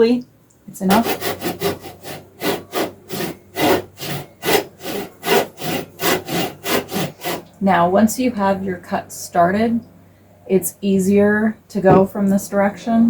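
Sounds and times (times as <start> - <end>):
hand saw cutting wood: 0.9 - 7.6.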